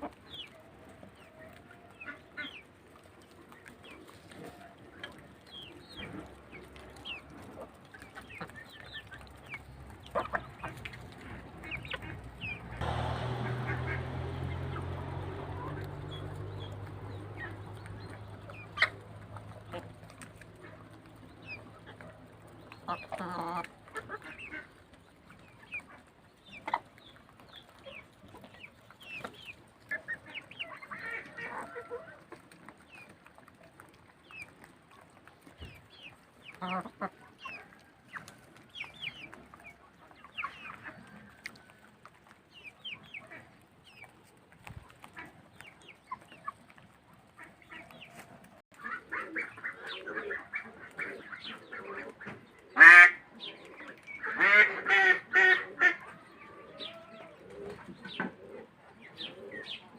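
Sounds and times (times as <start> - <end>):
chickens clucking: 0.0 - 59.9.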